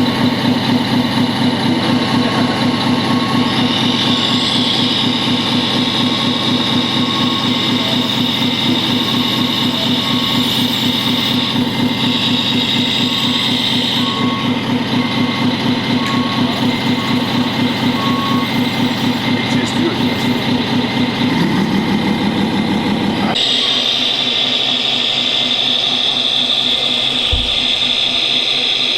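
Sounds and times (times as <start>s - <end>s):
toy truck motor rumble and whine: 0.0s - 28.9s
short beeps: 2.0s - 11.6s, 12.9s - 19.1s.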